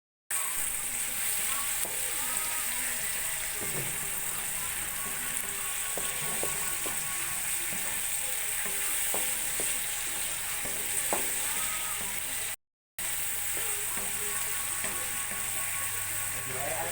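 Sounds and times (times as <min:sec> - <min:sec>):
meat sizzling in a pan: 0:00.3 - 0:16.9
utensil clicking against pan: 0:03.2 - 0:12.3.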